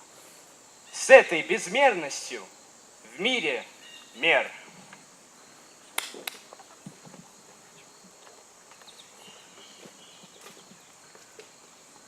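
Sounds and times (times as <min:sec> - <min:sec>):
steady hiss: 0:00.0 - 0:12.0
sharp clicks: 0:06.0 - 0:06.6.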